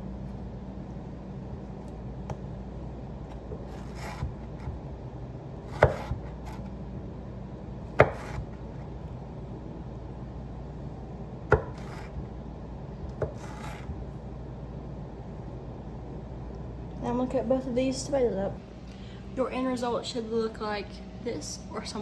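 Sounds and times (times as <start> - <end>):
knife slicing scrape: 3.6 - 4.7, 5.7 - 6.7, 8.0 - 8.6, 11.6 - 12.2, 13.2 - 14.0.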